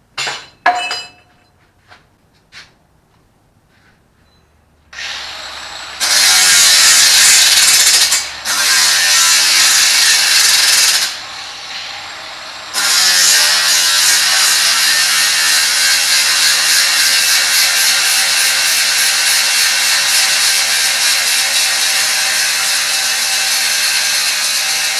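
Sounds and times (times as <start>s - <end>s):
angle grinder cutting: 5.0s - 24.9s.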